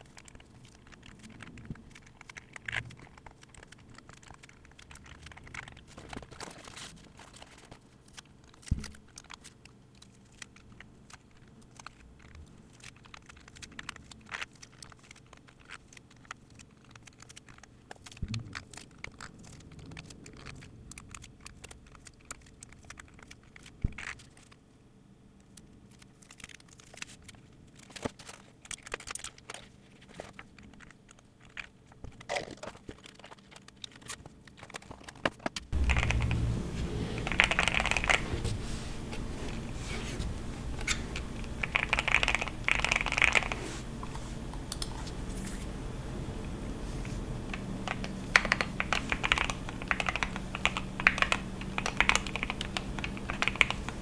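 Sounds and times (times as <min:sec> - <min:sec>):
steady low hum: 0:35.7 - 0:54.0
keyboard parts clicking: 0:35.8 - 0:45.2, 0:46.4 - 0:54.0.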